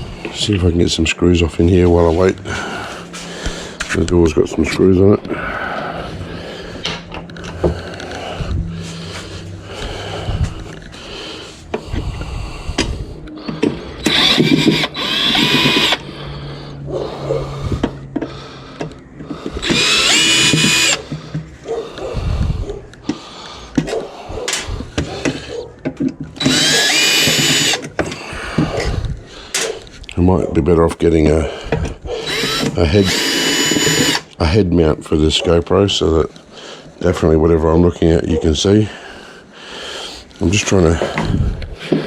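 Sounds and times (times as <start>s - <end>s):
power drill whirring: 13.5s - 16.1s, 19.3s - 21.0s, 26.4s - 28.9s, 32.2s - 34.4s
handling clicks and knocks: 23.8s - 26.6s.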